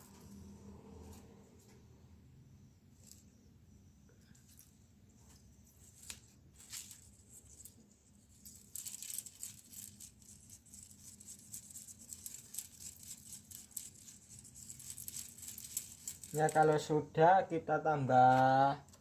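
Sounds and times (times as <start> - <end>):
plastic sheet crinkling: 5.8 - 16.9.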